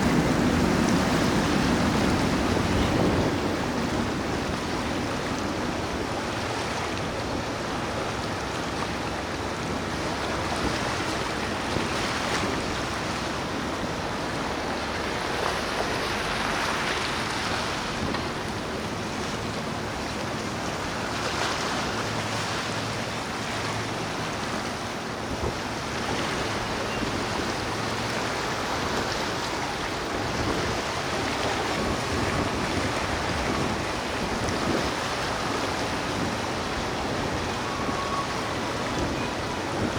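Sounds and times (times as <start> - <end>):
waves: 0.0 - 39.9
wind on microphone: 0.0 - 39.9.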